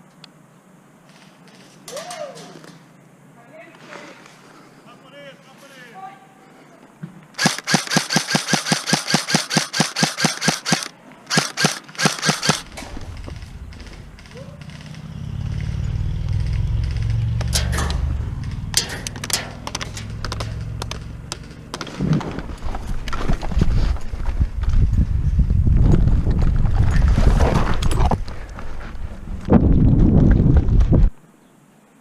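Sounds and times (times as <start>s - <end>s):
airsoft gun firing bursts: 7.4s - 15.6s
low rumble on microphone: 12.6s - 18.8s, 19.5s - 31.2s.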